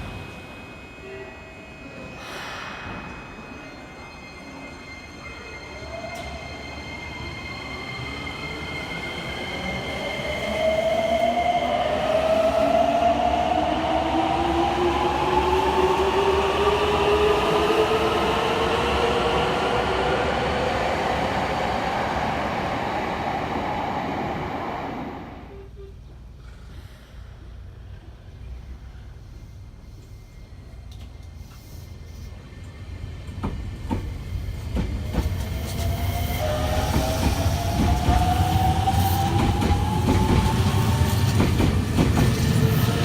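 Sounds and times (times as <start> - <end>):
subway train motor whine: 0.0 - 25.9, 32.6 - 43.0.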